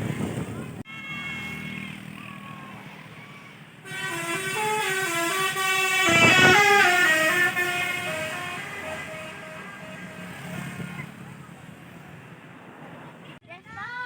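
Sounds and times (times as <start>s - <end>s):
bus musical horn melody: 0.0s - 2.0s, 3.8s - 11.2s.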